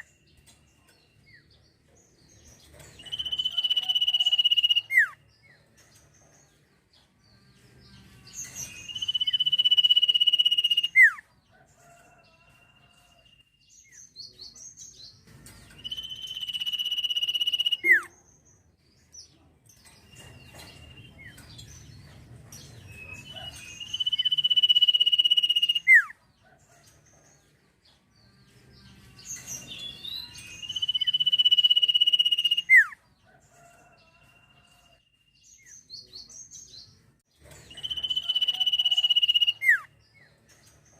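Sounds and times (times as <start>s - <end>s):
songbird whistling song: 2.8s - 6.0s, 8.0s - 11.2s, 15.5s - 18.7s, 22.6s - 26.2s, 28.3s - 33.0s, 37.4s - 40.8s.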